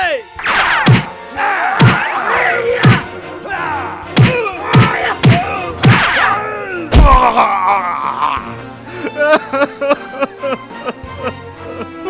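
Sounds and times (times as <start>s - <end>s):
music with thumping beat: 0.4s - 1.2s, 1.8s - 2.2s, 2.8s - 3.2s, 4.2s - 6.2s.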